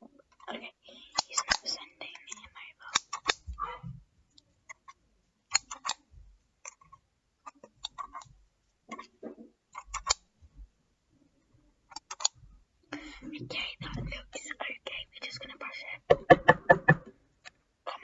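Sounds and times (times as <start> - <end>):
sharp clicks: 1.1 - 3.7.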